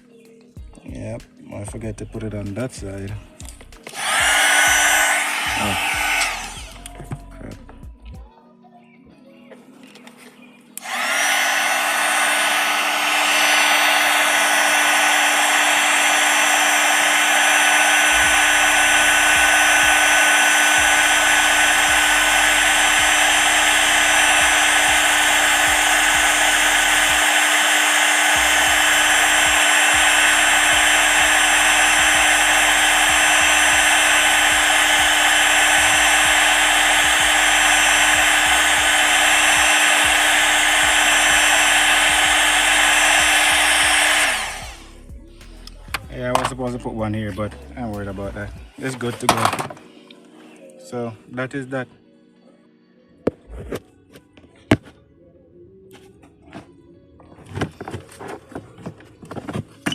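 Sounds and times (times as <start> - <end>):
heat gun fan whine and air rush: 0.8 - 7.9, 10.8 - 49.8.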